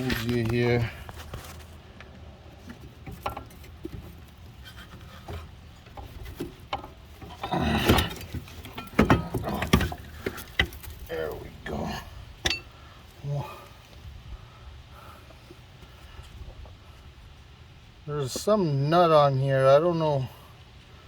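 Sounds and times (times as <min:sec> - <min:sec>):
metal parts clicks and knocks: 0:04.8 - 0:11.1.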